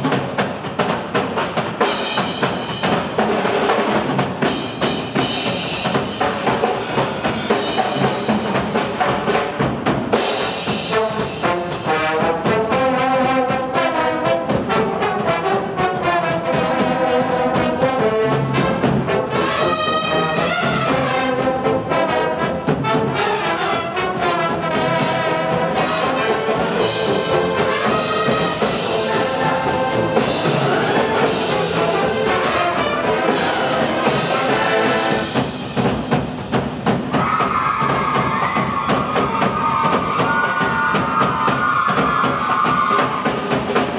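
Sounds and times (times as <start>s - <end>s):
drums keeping a steady beat: 0.0s - 43.9s
trumpets and trombones playing: 10.8s - 35.4s.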